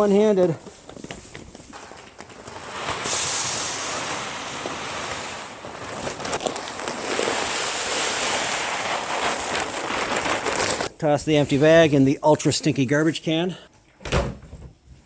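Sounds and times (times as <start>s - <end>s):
feed pouring from a bag: 1.0s - 10.9s.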